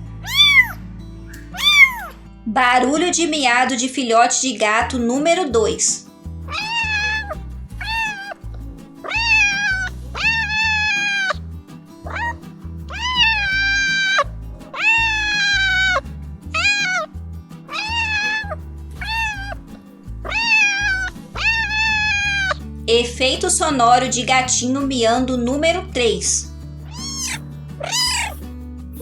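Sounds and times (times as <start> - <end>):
background music: 0.0 - 29.0
kitten meowing: 0.2 - 0.8, 1.5 - 2.1, 6.5 - 8.4, 9.0 - 11.4, 12.0 - 17.1, 17.7 - 19.6, 20.2 - 22.6, 26.8 - 28.4.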